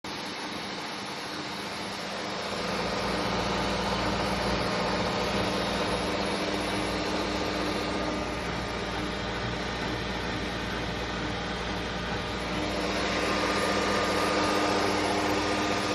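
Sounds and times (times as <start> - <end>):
noisy whir: 0.1 - 15.9
washing machine motor hum: 0.1 - 15.9.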